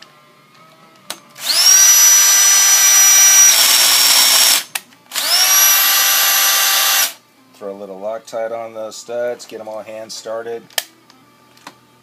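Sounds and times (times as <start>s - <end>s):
electric drill whining: 1.4s - 7.2s.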